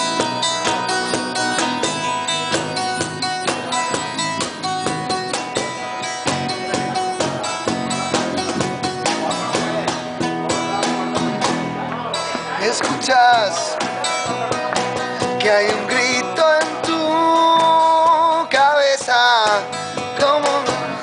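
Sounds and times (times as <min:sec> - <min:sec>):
live band playing: 0:00.0 - 0:21.0
strummed guitar: 0:00.0 - 0:21.0.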